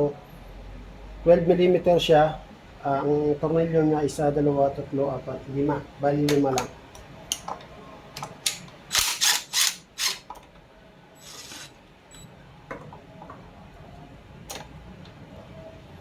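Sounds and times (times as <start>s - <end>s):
socket ratchet wrench clicking: 8.5s - 10.2s.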